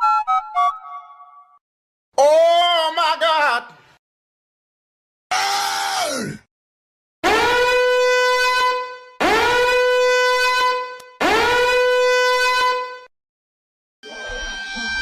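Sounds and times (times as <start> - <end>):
buzzy horn-like blast: 7.2 - 13.1.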